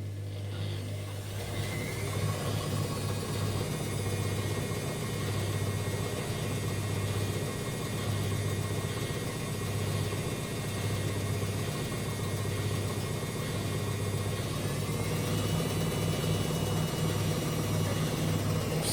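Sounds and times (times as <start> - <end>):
washing machine spin cycle hum: 0.0 - 18.9.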